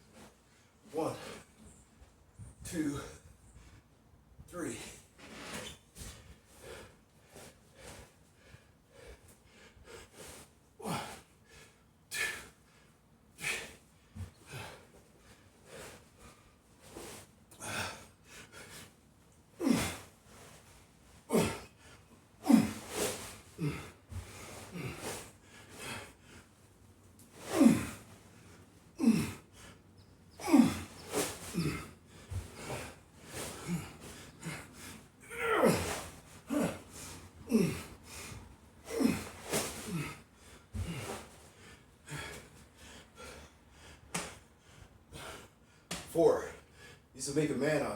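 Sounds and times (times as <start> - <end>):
man breathing hard and grunting: 10.8 - 12.6, 13.4 - 14.9, 17.6 - 18.9, 19.6 - 20.1, 21.2 - 26.3, 27.4 - 28.1, 28.9 - 29.8, 30.4 - 41.3.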